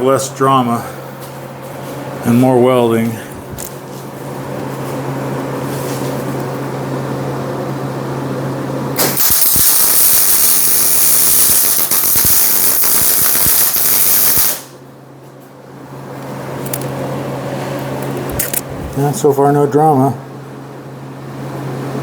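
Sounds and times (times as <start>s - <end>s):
steady hum: 0.0s - 22.0s
welding arc crackling hiss: 9.0s - 14.8s.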